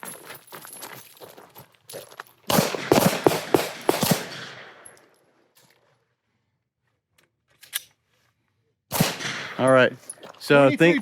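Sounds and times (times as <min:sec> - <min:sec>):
gunshot echo: 0:02.5 - 0:04.9, 0:08.9 - 0:09.8
pistol shots: 0:02.5 - 0:05.0, 0:08.9 - 0:09.7.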